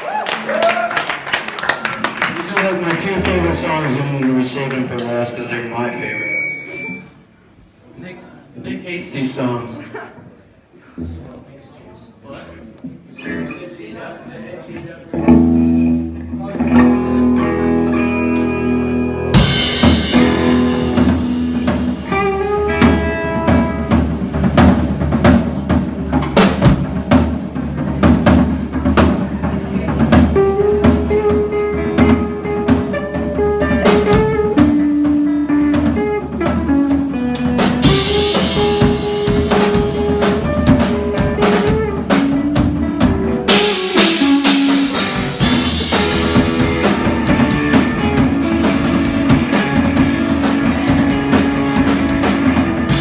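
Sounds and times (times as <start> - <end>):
electric guitar: 13.0 - 13.6, 15.1 - 53.0
bass guitar: 13.2 - 13.6, 15.1 - 53.0
drum kit with rimshots: 15.2 - 53.0.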